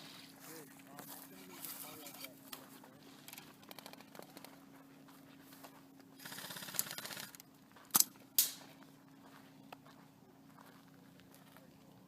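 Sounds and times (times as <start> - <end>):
airsoft gun full-auto burst: 6.2 - 7.4
sharp loud snaps: 7.9 - 8.6.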